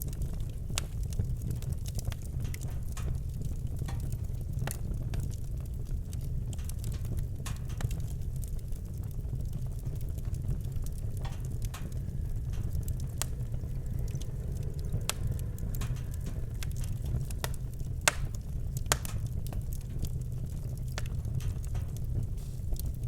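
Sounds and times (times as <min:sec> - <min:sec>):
wood fire crackling: 0:00.0 - 0:23.0.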